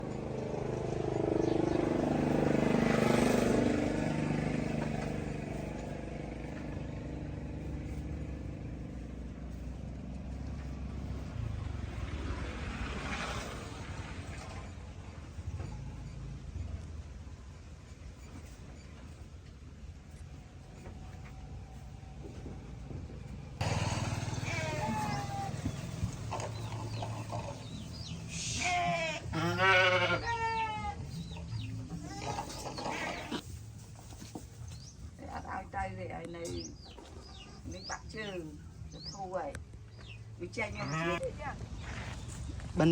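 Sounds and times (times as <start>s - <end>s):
vehicle engine running: 0.0s - 28.5s
sheep bleating: 23.6s - 26.0s, 28.3s - 31.2s, 31.9s - 33.4s.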